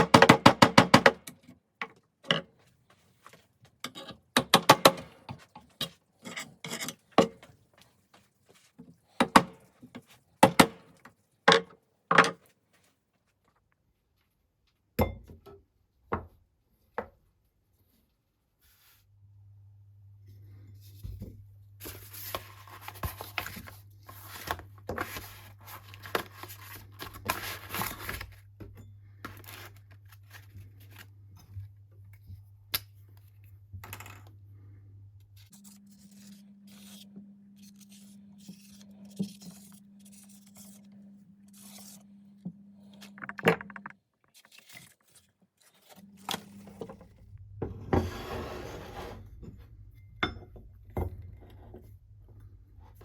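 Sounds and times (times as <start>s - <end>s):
steady low hum: 30.6s - 43.8s
scraping and rubbing strokes: 35.4s - 42.1s.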